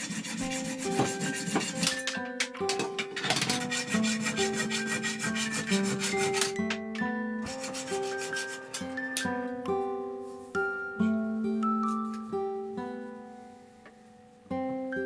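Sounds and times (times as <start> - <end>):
abrasive rubbing on knife: 0.0 - 2.2, 3.3 - 6.7, 7.4 - 9.0
plucked-string background music: 0.0 - 15.0.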